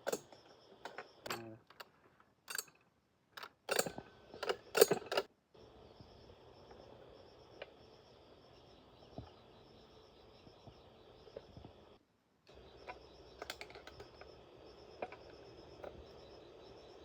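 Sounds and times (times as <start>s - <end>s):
insects chirping: 0.0s - 2.0s, 3.7s - 17.0s
metallic clinks and clanks: 0.0s - 2.8s, 3.4s - 5.3s.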